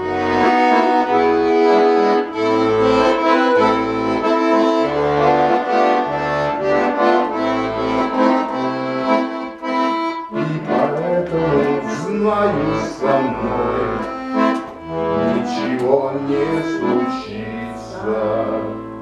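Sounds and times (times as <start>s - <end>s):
button accordion melody: 0.0s - 19.0s.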